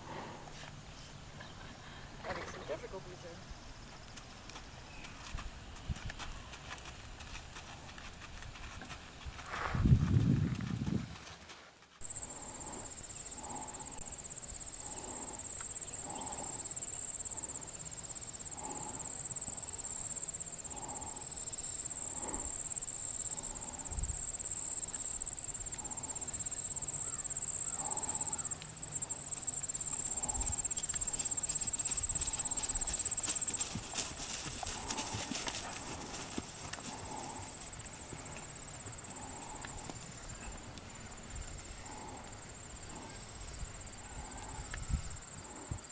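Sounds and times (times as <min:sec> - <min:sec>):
horse hooves clip-clopping: 0:03.8 - 0:12.0, 0:27.8 - 0:42.2.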